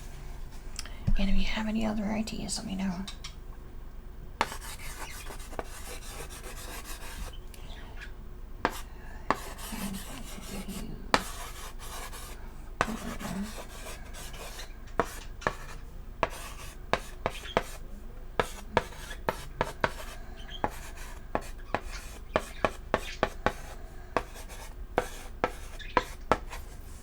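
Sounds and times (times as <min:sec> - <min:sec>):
chalk scratching on chalkboard: 0:04.4 - 0:07.4, 0:08.6 - 0:17.8, 0:18.4 - 0:27.0
chalk tapping on board: 0:04.4 - 0:07.4, 0:08.6 - 0:17.8, 0:18.4 - 0:26.8.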